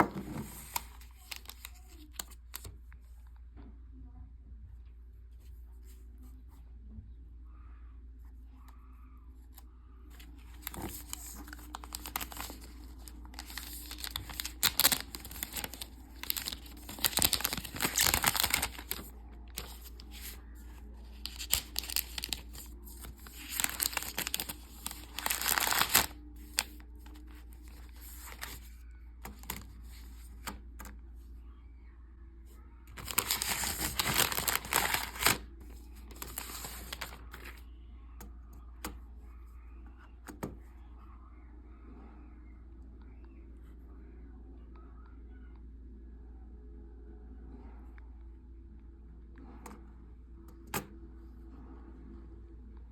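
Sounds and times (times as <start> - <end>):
packaging tearing and crinkling: 10.6 - 20.4, 21.1 - 28.6, 33.0 - 35.5, 36.1 - 37.6.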